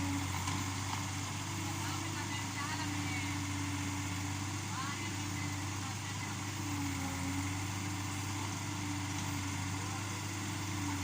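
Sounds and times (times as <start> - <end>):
diesel engine droning: 0.0 - 11.0.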